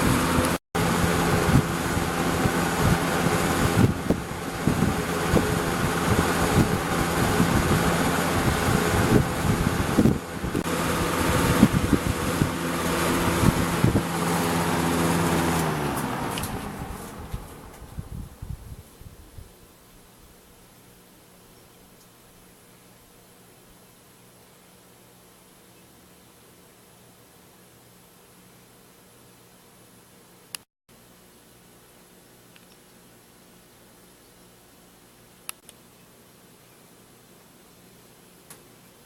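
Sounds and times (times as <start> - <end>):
box fan running: 0.0 - 22.1.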